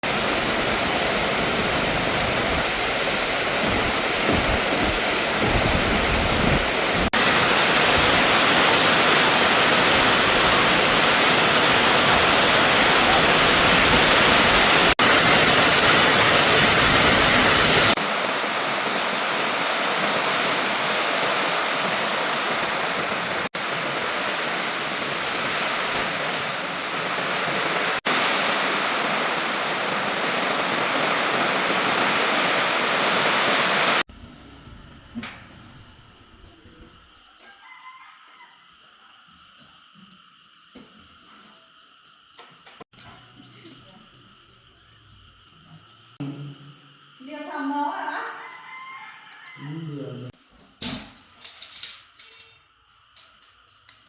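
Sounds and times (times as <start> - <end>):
heavy rain in strong wind: 0.0 - 34.1.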